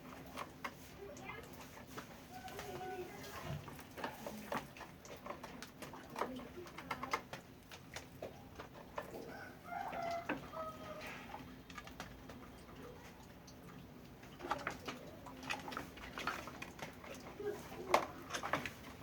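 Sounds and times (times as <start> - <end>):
chickens clucking: 8.2 - 16.6.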